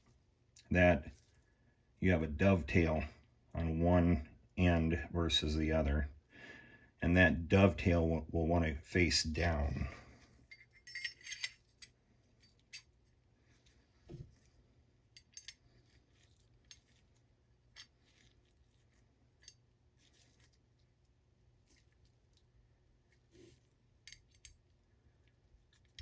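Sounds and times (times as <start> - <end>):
faint metallic clicks and knocks: 13.6 - 18.3, 24.0 - 25.0.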